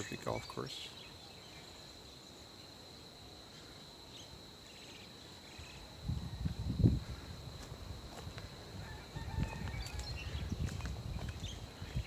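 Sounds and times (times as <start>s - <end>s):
faint bird chirps: 0.0s - 6.6s
high-pitched insect drone: 0.0s - 12.0s.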